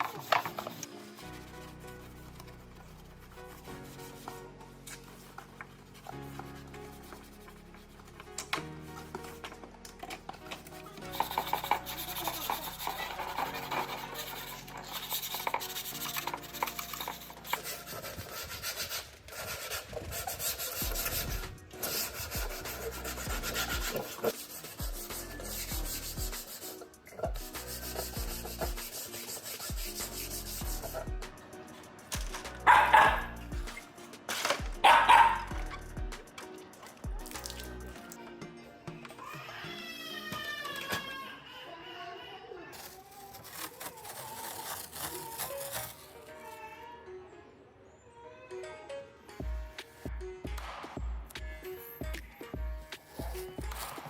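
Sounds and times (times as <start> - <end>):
rubbing and scrubbing strokes: 0.0 - 38.0, 42.8 - 46.3, 53.0 - 54.0
background music with bass line: 20.8 - 24.2, 24.8 - 26.6, 27.2 - 29.0, 29.7 - 31.6, 32.2 - 33.9, 34.6 - 38.2, 49.4 - 54.0.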